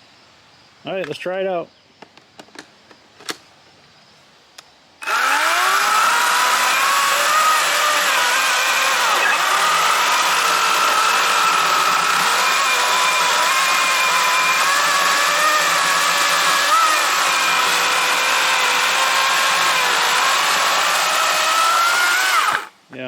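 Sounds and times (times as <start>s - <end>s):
chainsaw motor whining: 5.0s - 22.8s.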